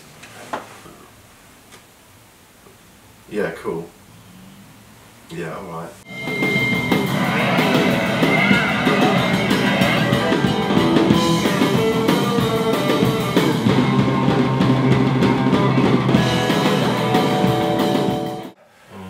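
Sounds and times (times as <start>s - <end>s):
drum kit and cymbal hits: 6.0s - 18.6s
bass guitar: 6.1s - 18.6s
electric guitar: 6.1s - 18.6s.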